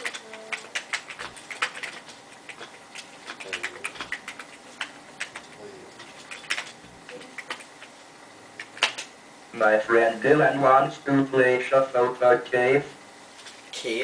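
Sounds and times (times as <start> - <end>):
computer keyboard typing: 0.0 - 7.9.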